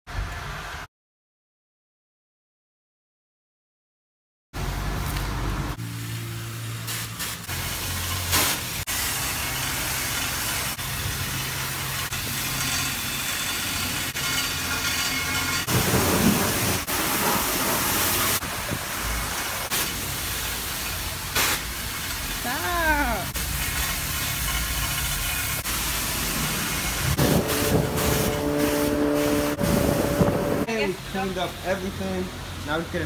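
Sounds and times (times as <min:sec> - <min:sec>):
wash pump hum: 0:04.6 - 0:33.0
pressure washer spray hissing: 0:05.8 - 0:14.1, 0:15.7 - 0:30.7.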